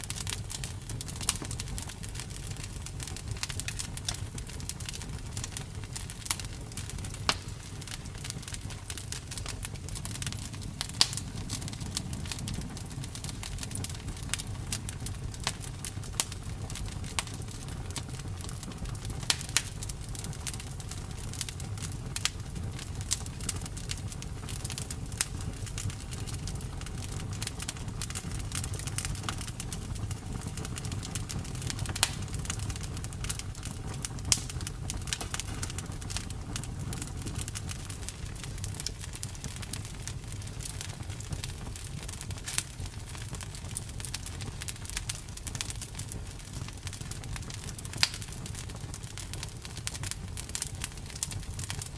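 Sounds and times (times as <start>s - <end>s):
bonfire crackling and popping: 0.0s - 51.9s
low rumble: 7.8s - 16.4s.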